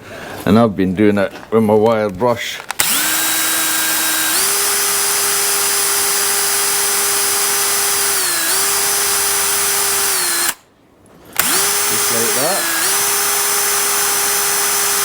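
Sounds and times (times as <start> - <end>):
drill with wire brush scrubbing rust: 2.8 - 10.6, 11.4 - 15.0.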